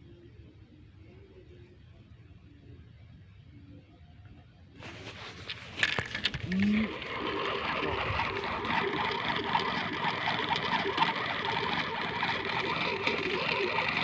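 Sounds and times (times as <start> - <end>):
small motor running: 5.8 - 14.0.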